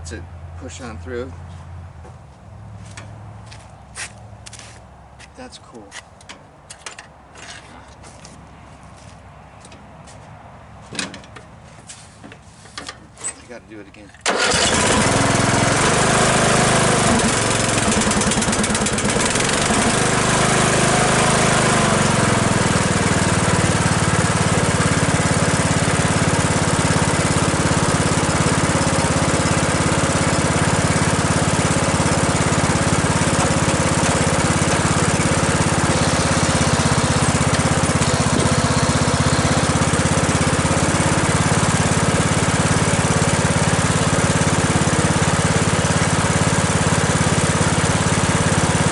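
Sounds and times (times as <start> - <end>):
lawnmower engine idling: 14.2 - 48.9.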